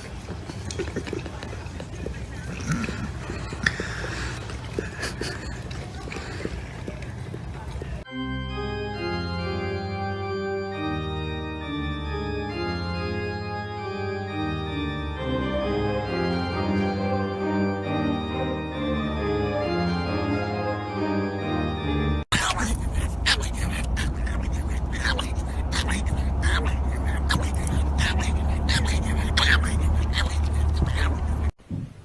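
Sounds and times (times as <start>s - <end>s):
organ playing slow chords: 8.1s - 22.2s.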